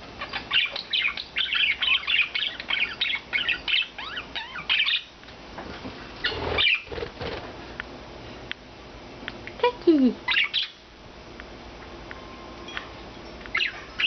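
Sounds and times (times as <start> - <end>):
budgerigars chattering: 6.2 - 7.3.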